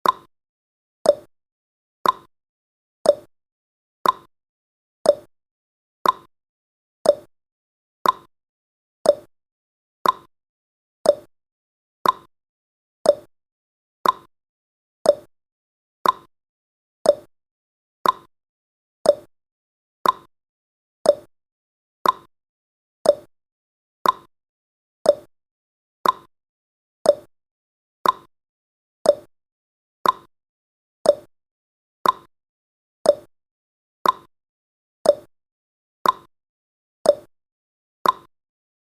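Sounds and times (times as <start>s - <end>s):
timer ticking: 0.0s - 0.3s, 1.0s - 1.3s, 2.0s - 2.3s, 3.0s - 3.3s, 4.0s - 4.3s, 5.1s - 5.3s, 6.0s - 6.3s, 7.0s - 7.3s, 8.0s - 8.3s, 9.0s - 9.3s, 10.0s - 10.3s, 11.0s - 11.3s, 12.0s - 12.3s, 13.0s - 13.3s, 14.0s - 14.3s, 15.0s - 15.3s, 16.0s - 16.3s, 17.0s - 17.3s, 18.0s - 18.3s, 19.0s - 19.3s, 20.0s - 20.3s, 21.0s - 21.3s, 22.0s - 22.3s, 23.0s - 23.3s, 24.0s - 24.3s, 25.0s - 25.3s, 26.0s - 26.3s, 27.0s - 27.3s, 28.0s - 28.3s, 29.0s - 29.3s, 30.0s - 30.3s, 31.0s - 31.3s, 32.0s - 32.3s, 33.0s - 33.3s, 34.0s - 34.3s, 35.0s - 35.3s, 36.0s - 36.3s, 37.1s - 37.3s, 38.0s - 38.3s.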